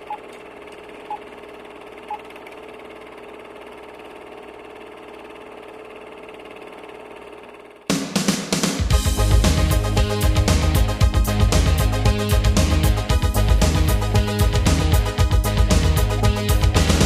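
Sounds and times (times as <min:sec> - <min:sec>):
pulsing droning hum: 0:08.9 - 0:17.0.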